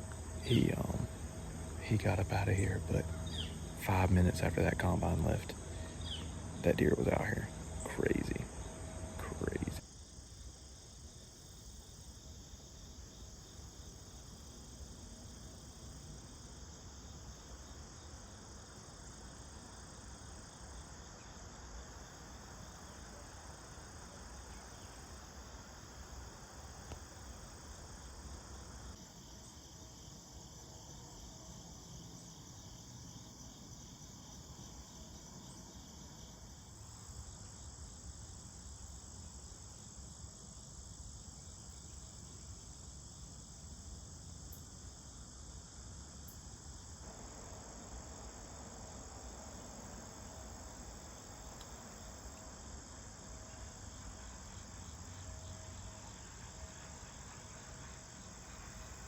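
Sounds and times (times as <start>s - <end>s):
crickets and insects trilling: 0.0s - 59.0s.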